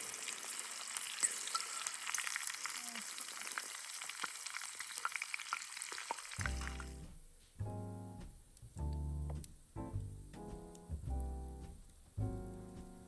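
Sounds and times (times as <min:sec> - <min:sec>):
food sizzling in a pan: 0:00.0 - 0:07.1
pops and crackles: 0:02.1 - 0:07.1
plucked piano-like music: 0:06.4 - 0:13.0.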